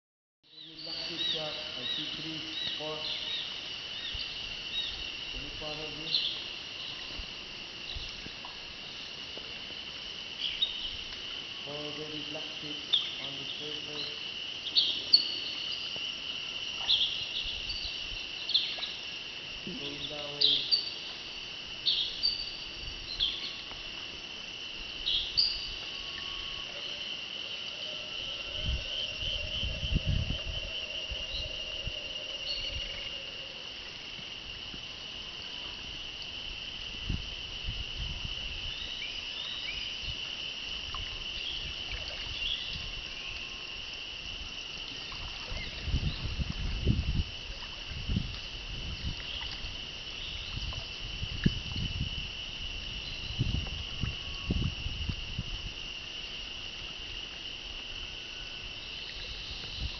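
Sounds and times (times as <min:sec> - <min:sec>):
insects droning: 0:00.5 - 0:59.9
paddle sloshing water: 0:40.8 - 0:43.4, 0:44.8 - 0:51.6.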